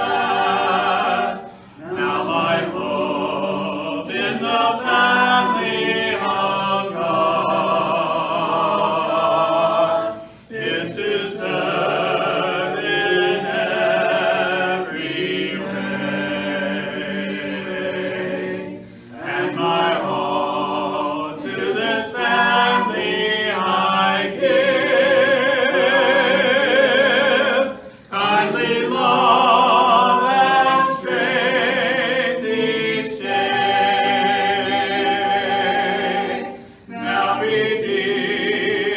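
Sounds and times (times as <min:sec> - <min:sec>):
group singing a hymn a cappella: 0:00.0 - 0:38.9.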